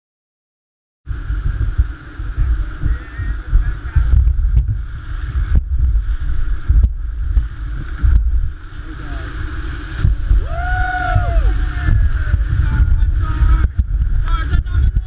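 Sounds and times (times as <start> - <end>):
wind buffeting microphone: 1.1 - 15.0
river water rushing: 6.0 - 14.8.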